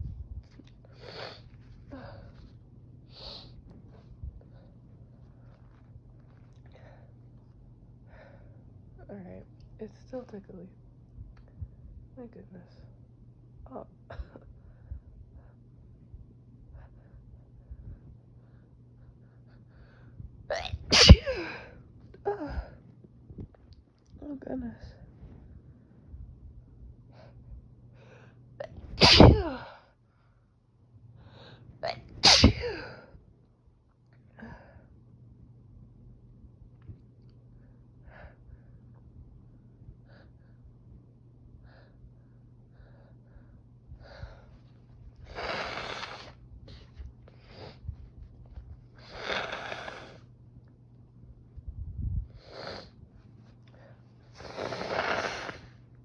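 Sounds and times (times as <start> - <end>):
woman sniffing through stuffed nose: 3.2 - 3.6, 20.8 - 21.6, 29.0 - 29.5, 32.2 - 32.9, 45.2 - 46.4, 49.0 - 50.3, 52.4 - 53.0, 54.3 - 55.8
person sneezing: 20.5 - 21.6, 29.0 - 29.7, 31.9 - 33.0.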